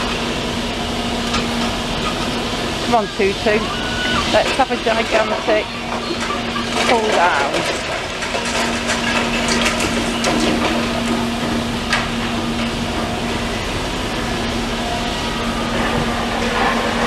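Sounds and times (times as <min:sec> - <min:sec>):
excavator engine hum: 0:00.0 - 0:17.0
debris breaking: 0:04.3 - 0:13.4.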